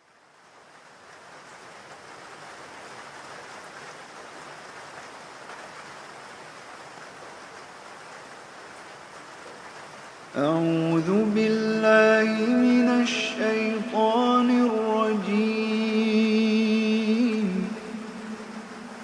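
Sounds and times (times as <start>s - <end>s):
steady rainfall: 0.0s - 19.0s.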